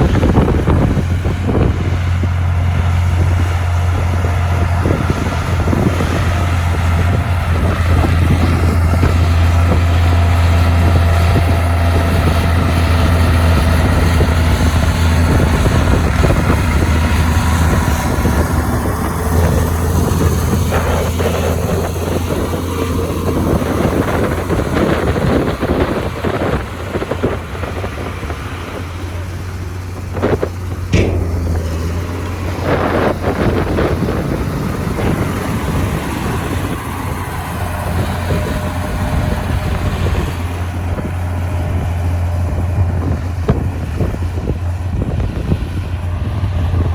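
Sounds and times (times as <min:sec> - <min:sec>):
diesel machinery low hum: 0:00.0 - 0:46.9
sharp metal clanks: 0:30.9 - 0:34.2.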